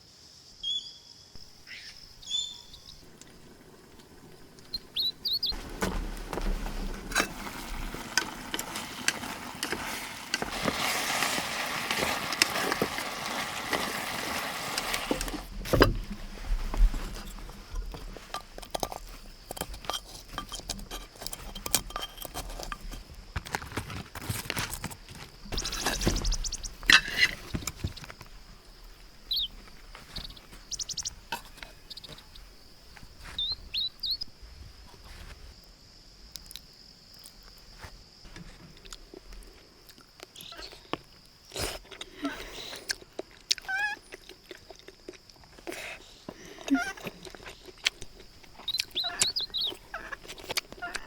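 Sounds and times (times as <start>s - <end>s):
bird chirps: 0.6s - 3.0s, 4.7s - 5.6s, 25.5s - 26.8s, 29.3s - 29.6s, 30.2s - 31.2s, 33.4s - 34.3s, 48.6s - 50.2s.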